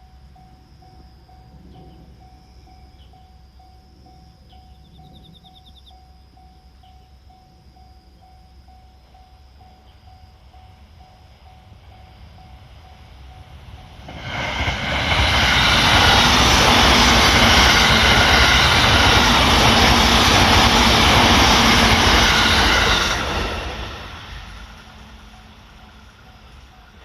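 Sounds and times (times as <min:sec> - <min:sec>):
level crossing warning bell: 0:00.0 - 0:14.1, 0:24.9 - 0:27.0
train rushing past: 0:09.9 - 0:27.0.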